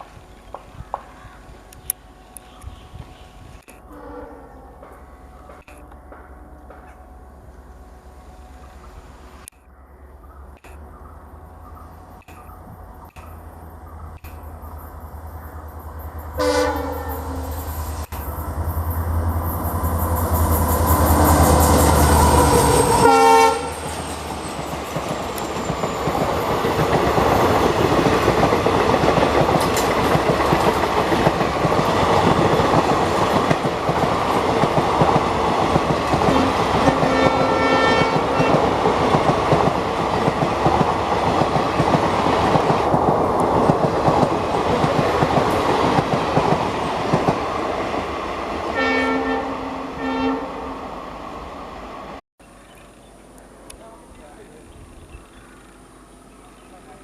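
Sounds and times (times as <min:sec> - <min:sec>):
diesel locomotive engine rumble: 0:00.0 - 0:52.2
train horn blasts: 0:03.8 - 0:05.4, 0:16.4 - 0:17.8, 0:21.1 - 0:24.1, 0:36.2 - 0:38.8, 0:48.7 - 0:51.0.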